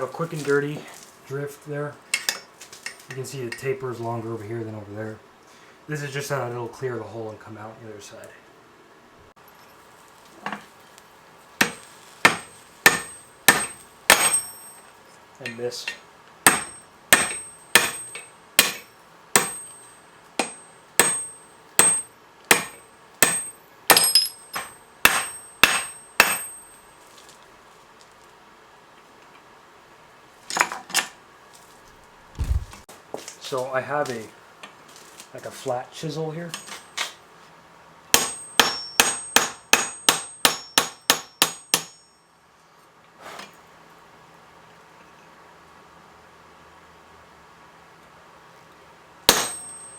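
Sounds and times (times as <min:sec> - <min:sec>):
hammer striking steel on anvil: 0:11.6 - 0:26.8, 0:38.1 - 0:42.2, 0:49.3 - 0:49.9.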